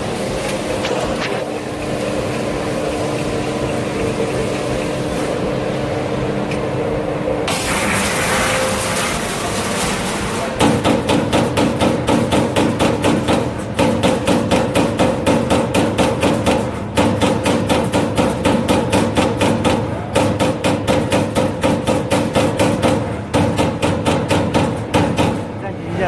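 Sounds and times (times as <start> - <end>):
machine hum: 0.0 - 17.3
punch press punching sheet metal: 7.5 - 25.6.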